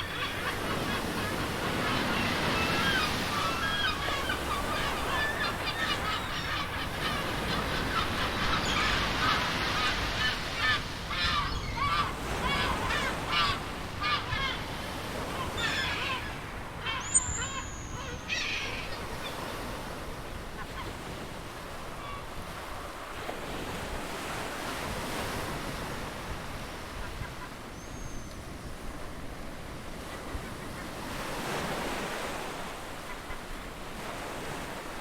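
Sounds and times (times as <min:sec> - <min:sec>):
birds honking: 0:00.0 - 0:19.7
ocean waves: 0:00.0 - 0:35.0.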